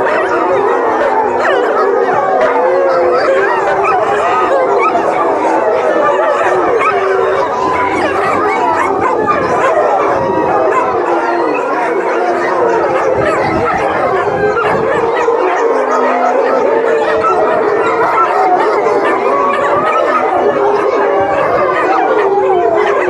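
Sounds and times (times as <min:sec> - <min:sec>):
dogs barking and yipping: 0:00.0 - 0:23.0
dogs howling: 0:00.0 - 0:23.0.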